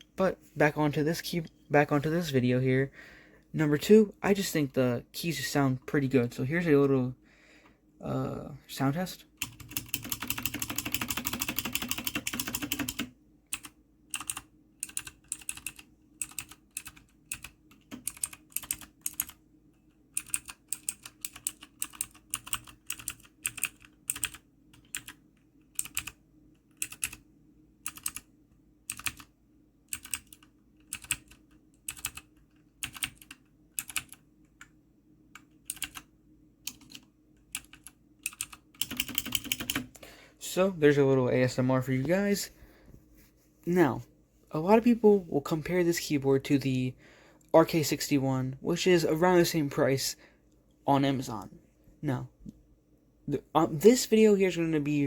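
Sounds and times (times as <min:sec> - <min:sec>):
clicky mechanical keyboard typing: 0:09.4 - 0:19.4, 0:20.1 - 0:27.2, 0:27.8 - 0:29.3, 0:29.9 - 0:40.0.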